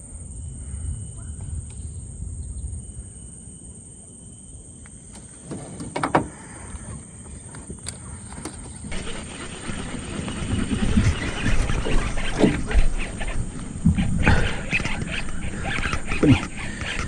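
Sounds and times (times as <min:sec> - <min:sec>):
handling noise clatter: 0:08.9 - 0:17.0.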